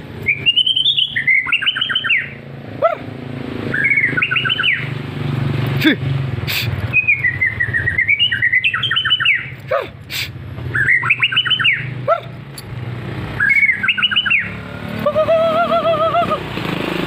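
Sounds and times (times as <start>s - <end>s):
bird singing: 0.0s - 3.0s, 3.6s - 5.1s, 6.8s - 9.8s, 10.6s - 16.4s.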